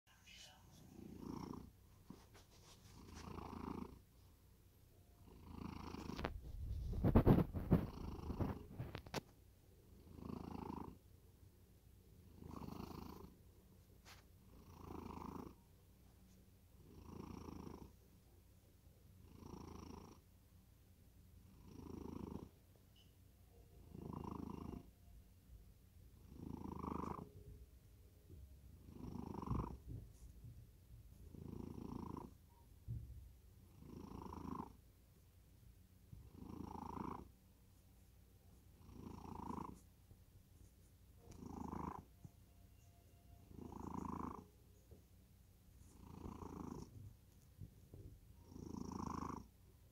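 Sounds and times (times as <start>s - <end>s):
cat snoring: 0.8s - 2.2s, 2.8s - 4.0s, 5.2s - 9.2s, 9.9s - 11.0s, 12.2s - 13.4s, 14.5s - 15.6s, 16.8s - 18.0s, 19.2s - 20.3s, 21.4s - 22.6s, 23.8s - 24.9s, 26.2s - 27.3s, 28.8s - 30.0s, 31.3s - 32.6s, 33.6s - 34.8s, 36.2s - 37.3s, 38.8s - 39.8s, 41.2s - 42.1s, 43.5s - 44.5s, 45.8s - 47.0s, 47.9s - 49.5s.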